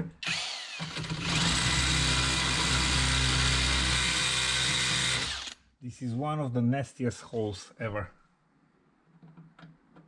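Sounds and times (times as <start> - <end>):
electric drill boring metal: 0.2 - 5.6.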